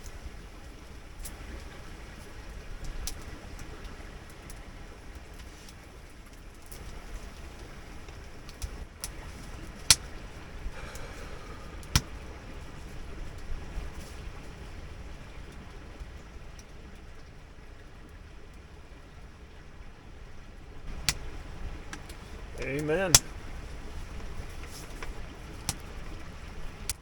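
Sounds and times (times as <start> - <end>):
creek rushing: 6.8 - 16.9, 20.8 - 26.9.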